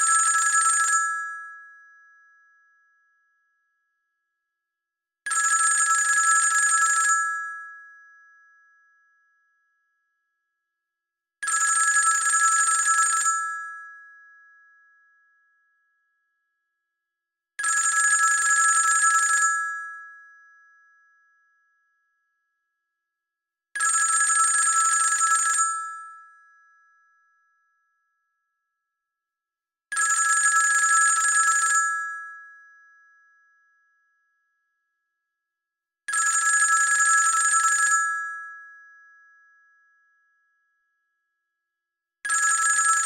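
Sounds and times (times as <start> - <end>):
telephone bell ringing: 0.0 - 1.4, 5.4 - 7.5, 11.5 - 13.7, 17.6 - 19.8, 23.8 - 26.2, 30.0 - 32.2, 36.2 - 38.5, 42.3 - 43.0.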